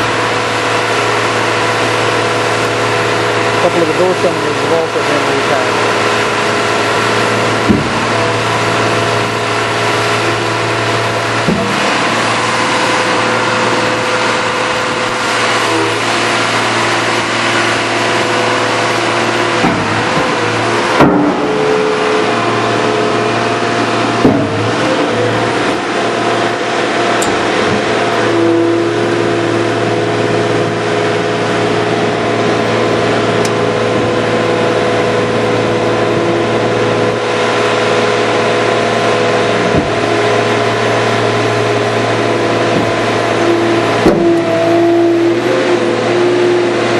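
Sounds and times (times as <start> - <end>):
diesel engine running: 0.0 - 46.9
sharp knocks: 7.6 - 8.4, 11.4 - 11.9, 19.5 - 21.9, 39.7 - 40.1, 42.7 - 43.2, 44.0 - 44.6.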